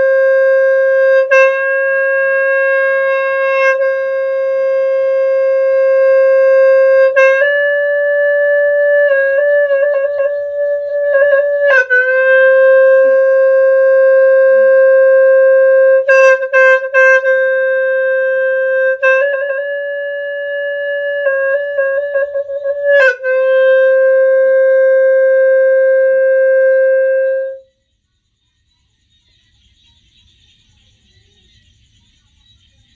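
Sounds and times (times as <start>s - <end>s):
horn blown in long notes: 0.0s - 27.7s.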